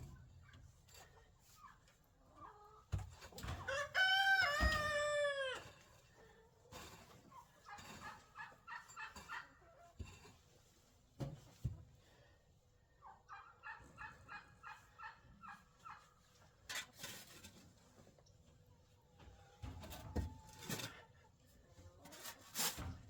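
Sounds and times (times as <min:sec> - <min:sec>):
chickens clucking: 0:00.4 - 0:10.0, 0:13.0 - 0:16.8.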